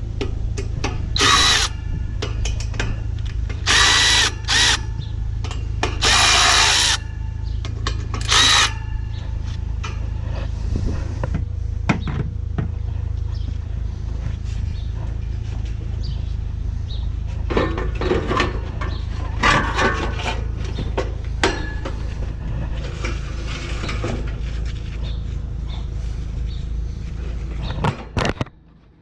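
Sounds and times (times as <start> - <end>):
steady low hum: 0.0 - 29.0
metal clanks and scrapes from tools: 17.5 - 22.1, 22.7 - 24.9.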